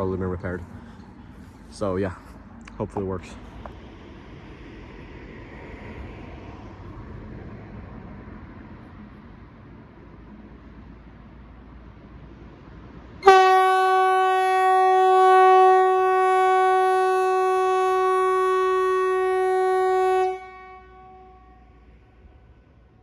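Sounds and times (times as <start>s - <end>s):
siren echo: 13.2s - 21.5s
civil defence siren steady tone: 13.2s - 22.8s.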